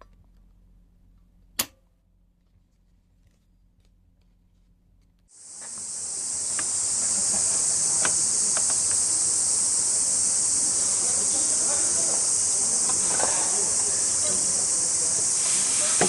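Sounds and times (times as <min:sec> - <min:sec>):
high gas hiss: 0:05.3 - 0:16.0
faint clicks: 0:08.0 - 0:09.1.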